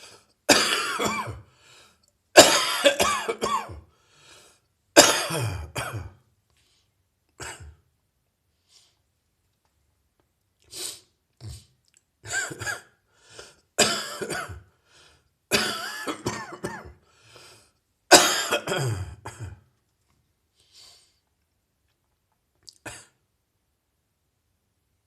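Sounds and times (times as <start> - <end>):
person coughing chesty bouts: 0.5 - 1.5, 2.4 - 3.9, 5.0 - 6.2, 7.4 - 7.8, 11.4 - 13.0, 13.8 - 14.7, 15.5 - 17.0, 18.1 - 19.7, 22.7 - 23.2.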